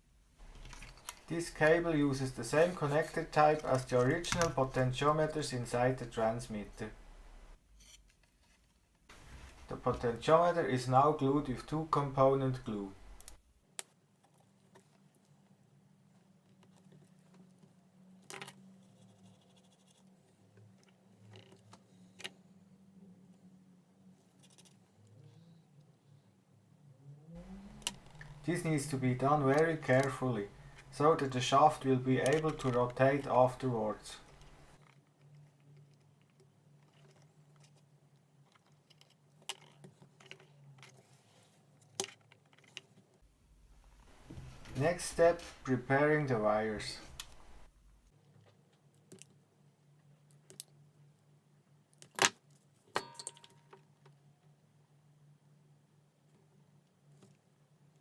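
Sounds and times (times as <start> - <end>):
faint low hum: 0.0 - 8.0, 9.1 - 41.9
small parts clicking and tapping: 0.4 - 1.3, 34.2 - 41.0, 41.8 - 43.2, 50.2 - 50.8, 51.9 - 54.2
soft clicks and scratches: 13.2 - 22.5, 24.2 - 25.9, 34.2 - 43.2.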